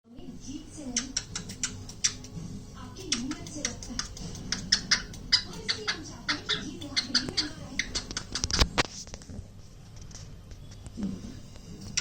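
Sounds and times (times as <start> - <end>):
cockatiel kissing sounds: 0.9 - 2.4, 3.0 - 8.8.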